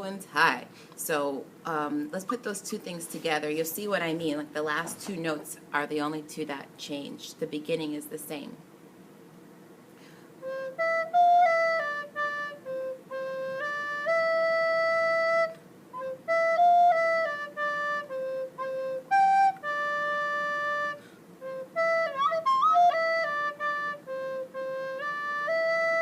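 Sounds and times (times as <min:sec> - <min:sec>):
recorder melody: 0:10.4 - 0:26.0.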